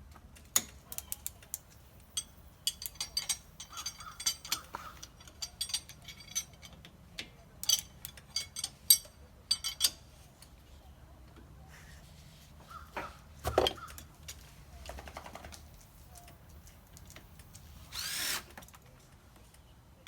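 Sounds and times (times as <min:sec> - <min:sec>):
metal clinks: 0:00.9 - 0:06.8, 0:07.6 - 0:10.0.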